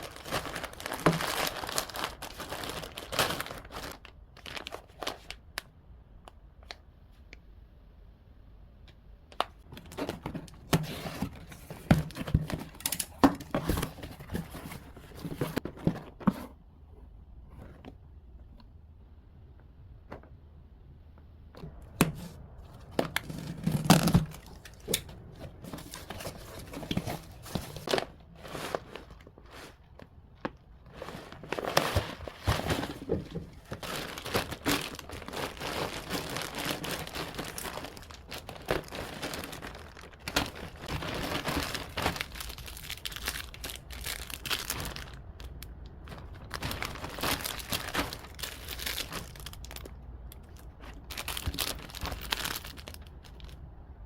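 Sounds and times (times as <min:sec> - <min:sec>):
plastic packaging crinkling and tearing: 0:00.0 - 0:05.7, 0:22.2 - 0:53.7.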